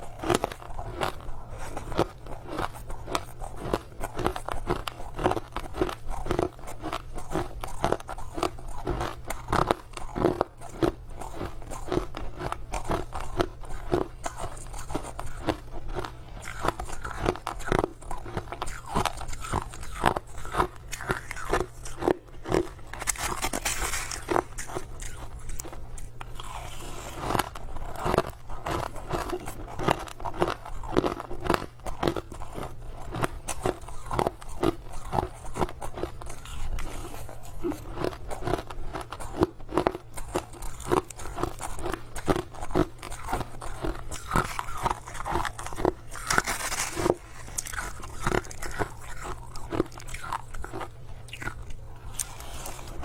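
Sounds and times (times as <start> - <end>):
crushed ice crunching: 16.4 - 25.7, 42.6 - 50.8.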